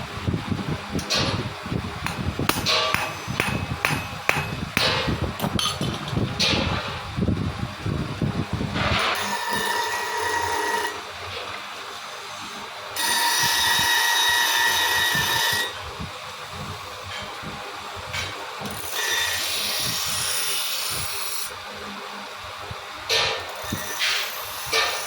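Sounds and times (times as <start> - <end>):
power grinder on steel: 23.5 - 25.0.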